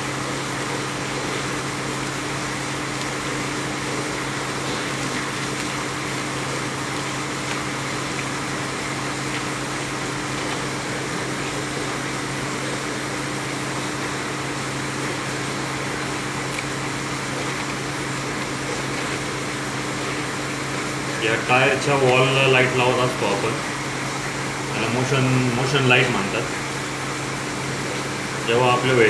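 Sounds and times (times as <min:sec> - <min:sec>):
steady low hum: 0:00.0 - 0:29.0
even hiss: 0:15.7 - 0:29.0.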